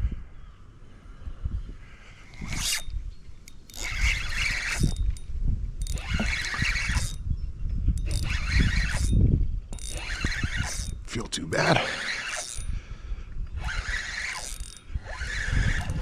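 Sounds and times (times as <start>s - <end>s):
wind rumbling on microphone: 0.0s - 12.0s, 12.6s - 16.0s
fishing reel running: 2.3s - 7.2s, 8.0s - 11.2s, 11.8s - 12.8s, 13.6s - 16.0s.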